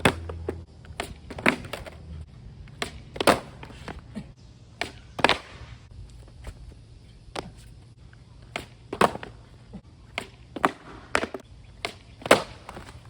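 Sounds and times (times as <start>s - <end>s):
skateboard clacking on ground: 0.0s - 2.0s, 2.7s - 4.1s, 10.1s - 13.0s.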